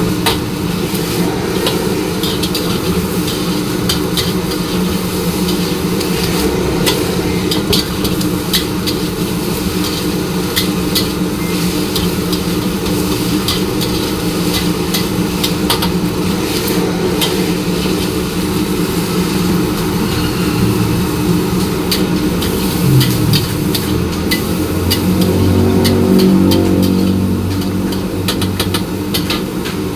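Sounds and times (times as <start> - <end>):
steady low drone: 5.6 - 8.8, 19.8 - 27.6.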